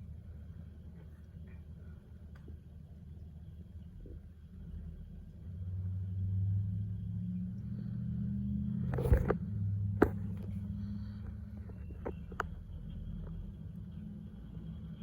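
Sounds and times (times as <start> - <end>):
engine droning: 0.0 - 15.0.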